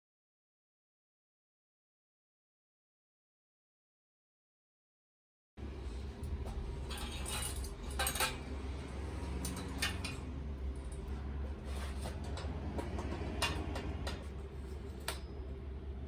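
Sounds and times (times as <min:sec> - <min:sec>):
steady low hum: 0:05.6 - 0:16.0
metal parts and tools clinking: 0:05.8 - 0:15.6.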